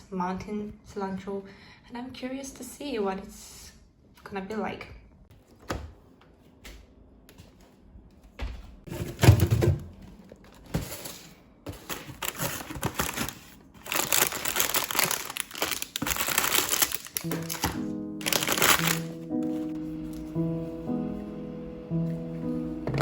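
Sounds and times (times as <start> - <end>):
crinkling rustle: 10.1 - 20.3.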